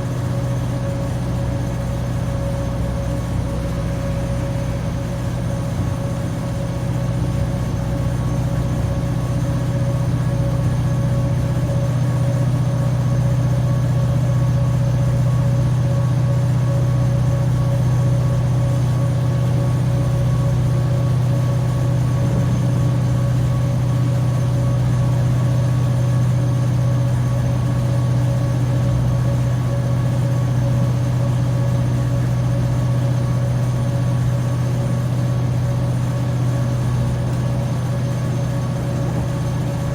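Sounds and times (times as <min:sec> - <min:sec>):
cooling fans running: 0:00.0 - 0:39.9.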